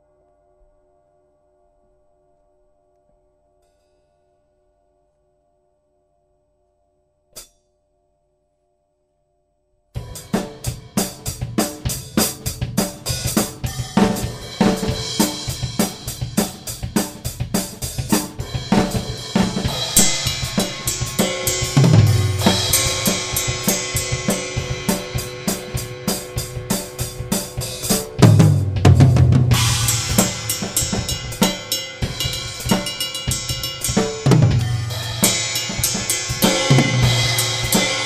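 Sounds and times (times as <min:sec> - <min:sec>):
cymbal crashes: 0:10.0 - 0:38.0
deep drum hit ringing: 0:10.0 - 0:38.0
drum kit playing: 0:10.0 - 0:38.0.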